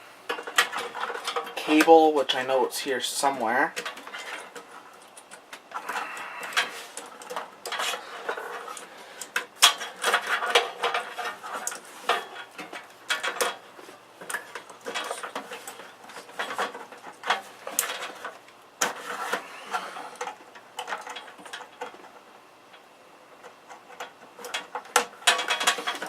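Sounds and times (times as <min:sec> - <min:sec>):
computer parts clattering: 0:00.3 - 0:22.2, 0:22.8 - 0:26.0.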